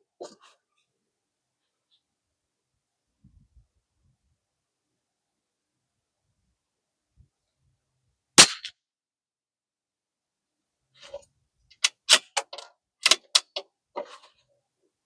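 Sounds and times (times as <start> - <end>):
rifle shot: 8.4 - 8.7
rifle bolt metallic clicks: 11.8 - 13.6.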